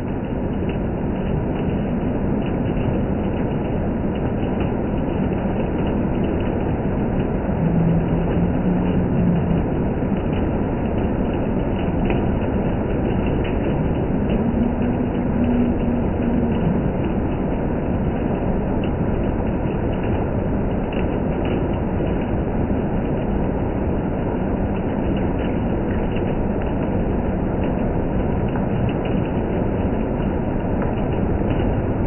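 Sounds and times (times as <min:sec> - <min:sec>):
hailstones ticking: 0:00.0 - 0:32.0
heavy hail and rain: 0:00.0 - 0:32.0.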